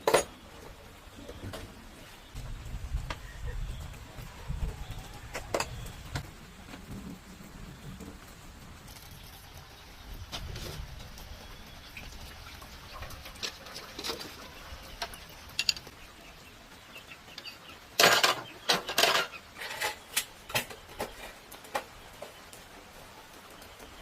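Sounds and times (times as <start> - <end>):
metal tools clinking and knocking: 0.0 - 0.4, 15.5 - 15.9, 18.0 - 20.6.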